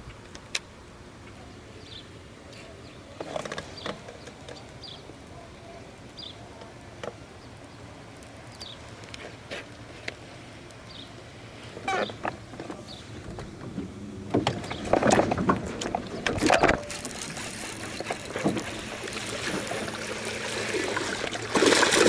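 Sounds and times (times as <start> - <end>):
fishing gear knocks and clicks: 14.5 - 19.8.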